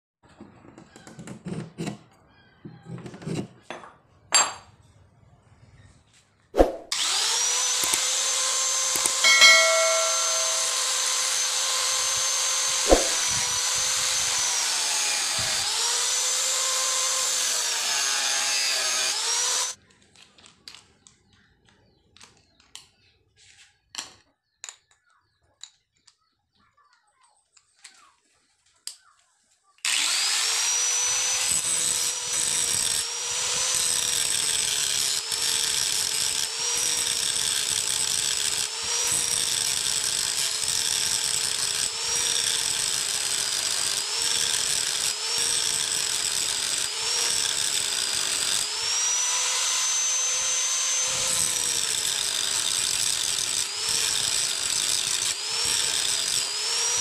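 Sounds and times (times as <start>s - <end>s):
electric grinder whining: 6.9s - 19.8s, 29.9s - 57.0s.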